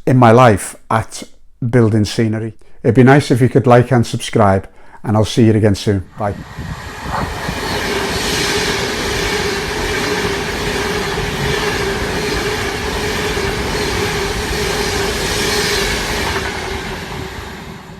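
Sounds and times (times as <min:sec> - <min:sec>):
wheels rumbling on rails: 0:06.1 - 0:17.9.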